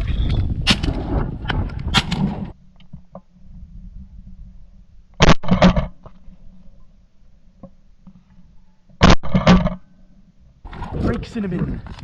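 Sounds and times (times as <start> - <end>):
wind buffeting microphone: 0.0 - 2.6, 10.6 - 12.0.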